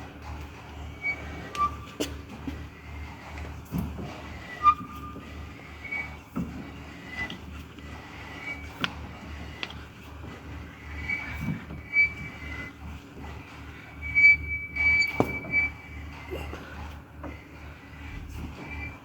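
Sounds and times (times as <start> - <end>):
faint squeaks: 0.8 - 2.2, 8.0 - 8.8, 10.8 - 12.8, 13.6 - 19.0.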